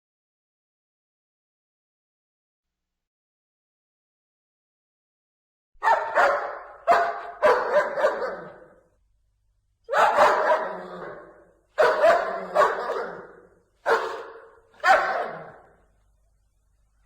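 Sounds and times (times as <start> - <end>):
dog barking: 5.8 - 8.9, 9.9 - 15.8.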